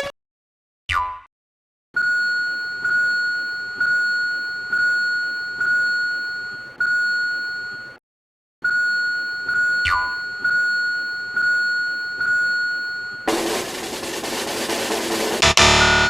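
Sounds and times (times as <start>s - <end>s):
loud rapid rattle: 13.3s - 16.0s
railroad crossing bell ringing: 15.6s - 16.0s.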